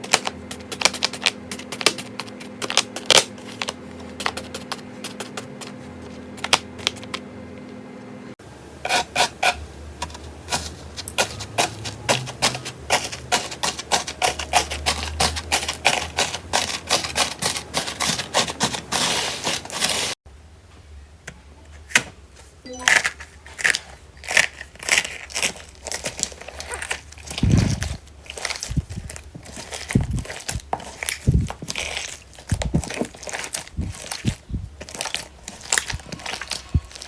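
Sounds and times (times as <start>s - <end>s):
slime crackling and popping: 24.3s - 37.0s.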